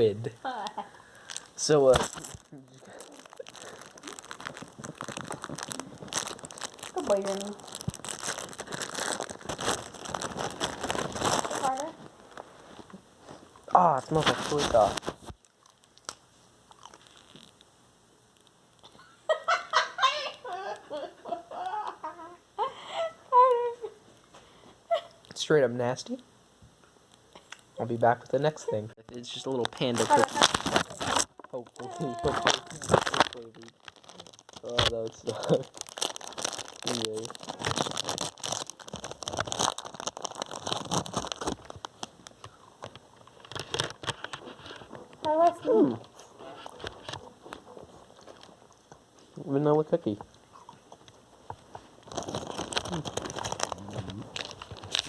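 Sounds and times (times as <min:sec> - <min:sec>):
plastic packaging crinkling: 0:00.5 - 0:17.6, 0:29.1 - 0:50.2, 0:50.8 - 0:55.0.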